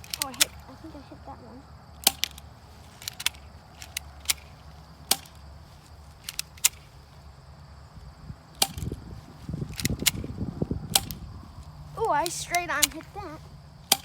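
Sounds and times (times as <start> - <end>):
low rustling: 0.0 - 14.0
airsoft pistol snaps: 2.0 - 5.4, 8.5 - 9.0, 9.7 - 11.3
faint clicks: 2.0 - 5.4.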